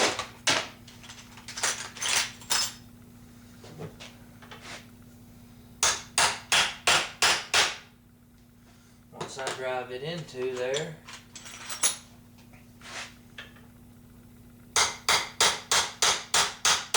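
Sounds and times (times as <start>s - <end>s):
hammer striking metal punch: 5.8s - 7.8s, 14.8s - 16.9s.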